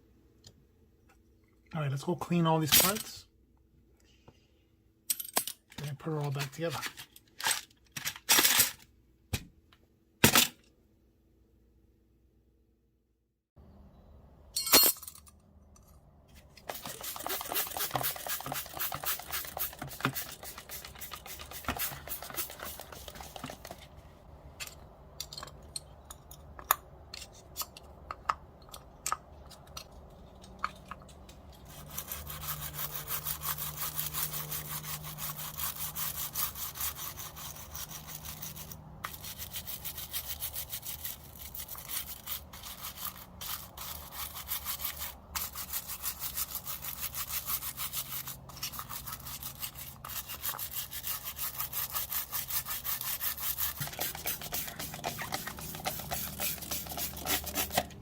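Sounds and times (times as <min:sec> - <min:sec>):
brush scrubbing metal parts: 0:05.8 - 0:07.6, 0:16.4 - 0:24.8, 0:29.5 - 0:58.0.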